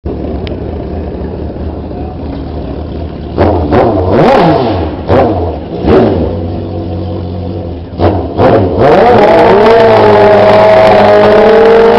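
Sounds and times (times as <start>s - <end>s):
motorcycle engine idling: 0.1s - 3.7s, 5.4s - 8.0s
motorcycle engine revving: 2.7s - 11.9s.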